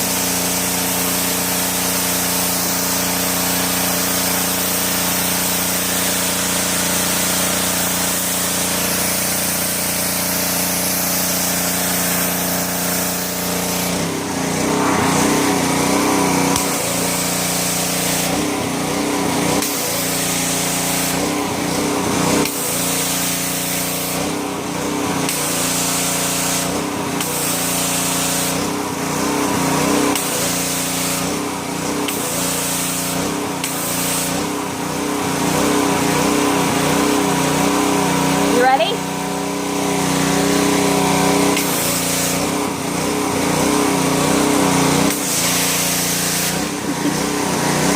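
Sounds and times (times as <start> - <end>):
water spray hiss: 0.0 - 18.6, 19.6 - 21.8, 22.4 - 24.3, 25.2 - 28.7, 30.0 - 31.4, 32.0 - 34.8, 41.4 - 42.6, 44.1 - 47.9
pressure washer motor drone: 0.0 - 47.9.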